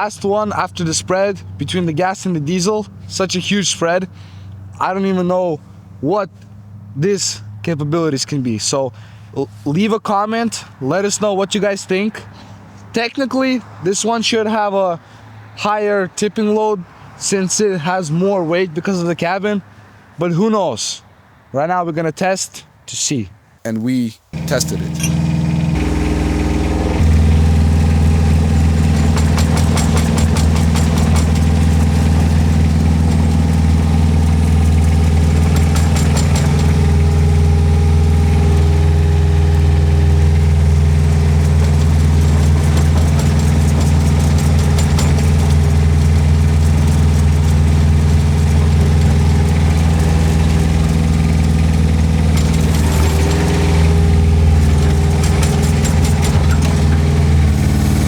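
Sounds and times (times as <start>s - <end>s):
diesel engine running: 24.4s - 58.0s.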